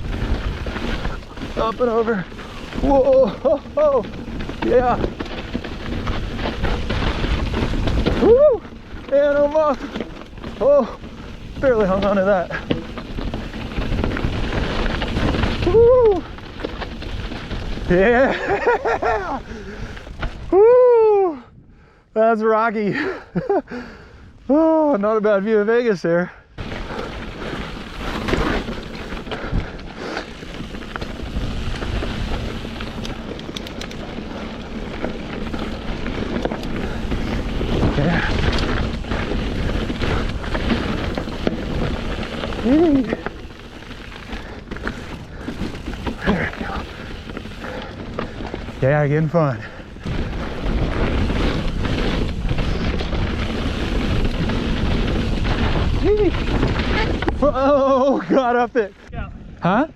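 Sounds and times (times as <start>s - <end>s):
bike clicks and rattles: 0.0s - 20.8s, 26.6s - 59.1s
bike tyres rolling on rocks: 0.0s - 21.2s, 21.8s - 59.9s
wind buffeting microphone: 26.6s - 57.7s.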